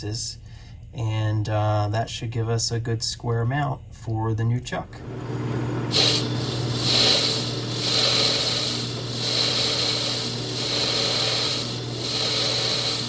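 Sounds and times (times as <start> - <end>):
lathe motor hum: 5.0 - 13.0
high scraping cutting noise: 5.9 - 13.0.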